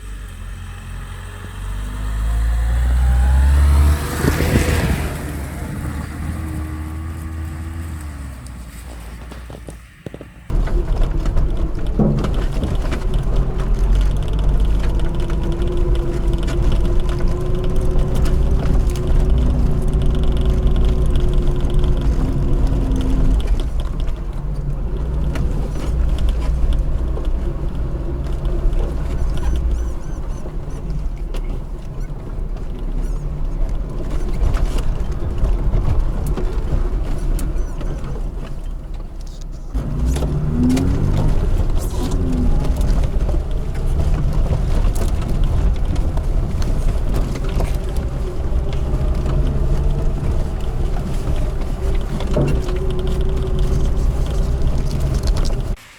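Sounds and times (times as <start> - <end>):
car engine rumbling and whining: 0.0 - 55.9
knocks and rattles: 8.7 - 55.8.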